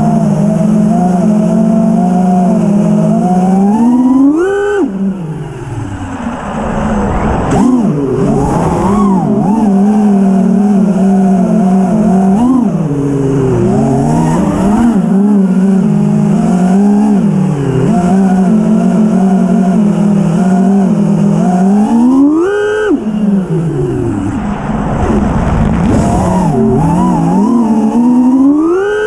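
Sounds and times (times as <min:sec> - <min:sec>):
drone motors whining: 0:00.0 - 0:29.0.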